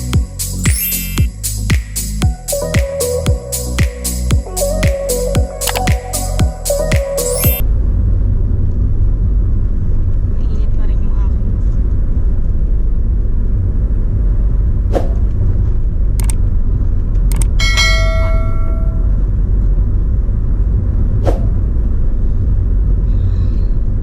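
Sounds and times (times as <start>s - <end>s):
steady low rumble: 0.0s - 24.0s
sharp clicks: 5.6s - 6.1s, 16.2s - 16.4s, 17.3s - 17.6s
bright metallic ring: 17.6s - 19.3s.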